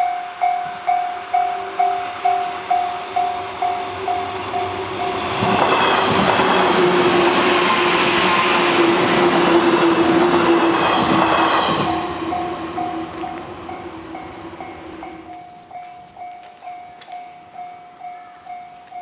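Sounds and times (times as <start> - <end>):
electric train passing: 0.0 - 19.0
level-crossing warning bell ringing: 0.0 - 19.0
wheels clattering over rails: 3.1 - 16.2.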